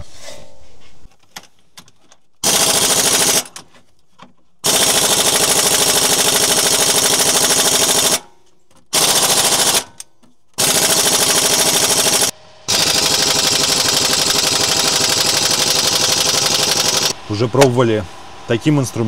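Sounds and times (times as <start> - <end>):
impact wrench hammering: 2.4 - 3.6, 4.6 - 8.2, 8.9 - 10.0, 10.6 - 17.7.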